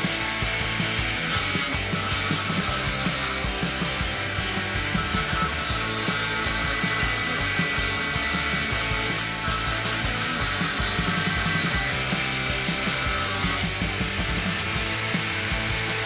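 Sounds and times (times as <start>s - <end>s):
background music: 0.0s - 16.0s
saw cutting through wood: 0.0s - 16.0s.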